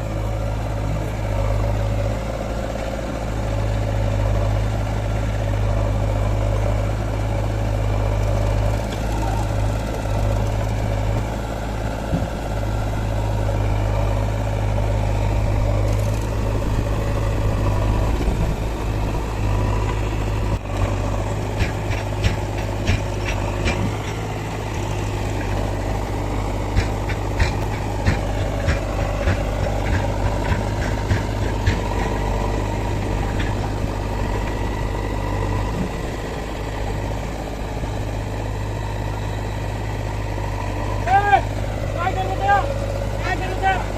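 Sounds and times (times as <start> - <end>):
diesel engine running: 0.0 - 43.9
sharp knocks and clanks: 12.0 - 13.0, 21.2 - 34.6.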